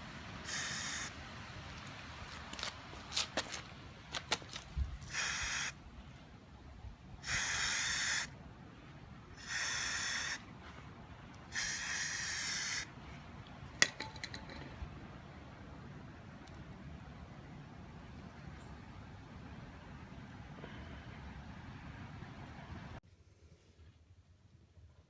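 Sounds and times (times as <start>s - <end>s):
spray paint can hissing: 0.5s - 1.1s, 5.1s - 5.8s, 7.2s - 8.3s, 9.4s - 10.4s, 11.5s - 12.9s.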